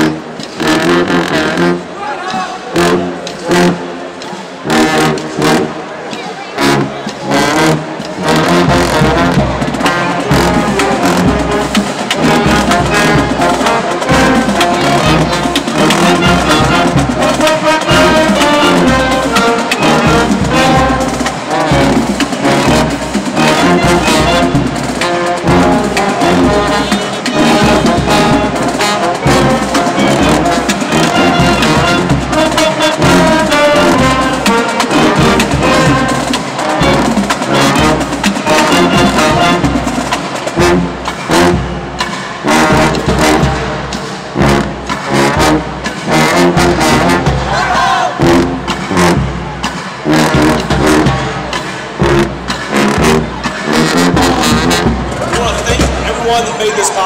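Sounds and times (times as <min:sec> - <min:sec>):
brass band playing: 0:00.0 - 0:57.0
drums keeping a steady beat: 0:00.0 - 0:57.0.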